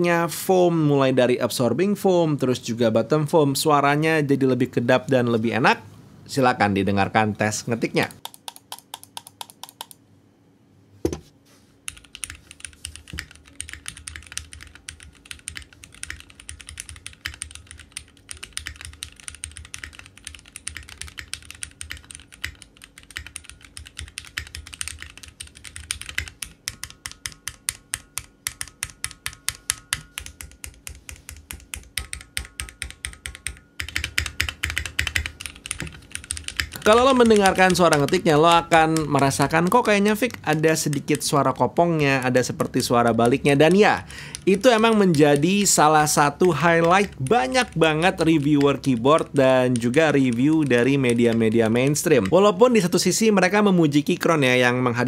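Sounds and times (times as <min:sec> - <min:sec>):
mechanical keyboard typing: 0:08.1 - 0:10.0, 0:11.9 - 0:53.0.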